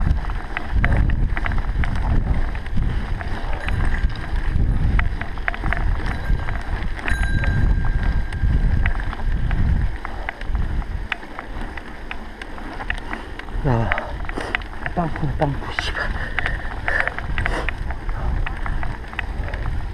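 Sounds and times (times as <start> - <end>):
sharp clicks and rattles: 0.0 - 19.9
wind buffeting microphone: 0.0 - 19.9.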